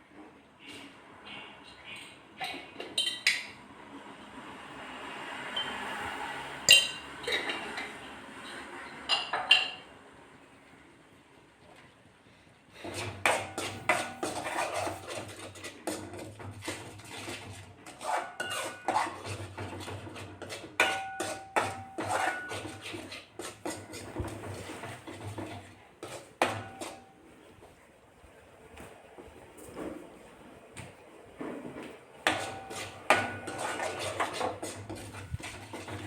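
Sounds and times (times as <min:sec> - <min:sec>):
metal spoon scraping paste: 0:12.8 - 0:27.1, 0:32.2 - 0:36.0.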